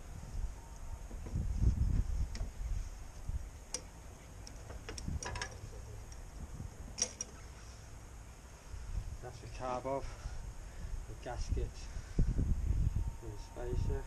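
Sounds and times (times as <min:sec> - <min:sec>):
handling noise: 0:03.7 - 0:07.4
sharp metallic clicks: 0:07.0 - 0:07.4.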